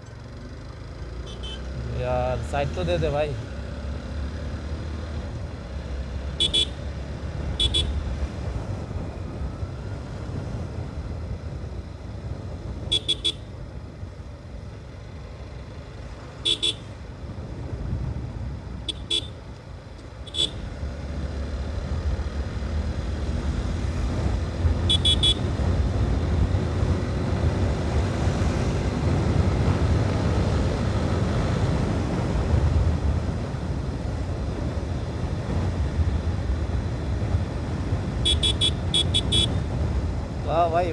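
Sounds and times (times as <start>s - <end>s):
motorcycle engine rumble: 0.0s - 40.9s
wind while riding: 0.0s - 40.9s
horn beeping short toots: 24.9s - 25.4s, 38.2s - 39.6s.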